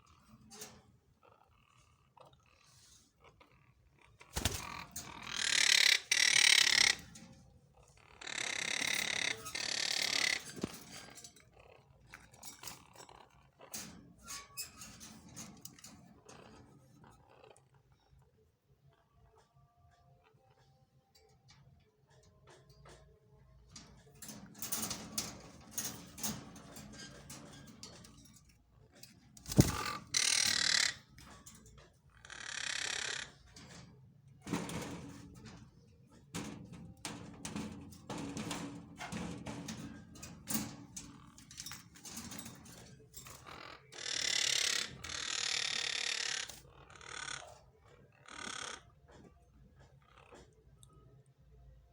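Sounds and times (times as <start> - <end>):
parrots chattering softly: 0.0 - 14.7, 15.4 - 20.8, 29.1 - 33.8, 42.5 - 51.0.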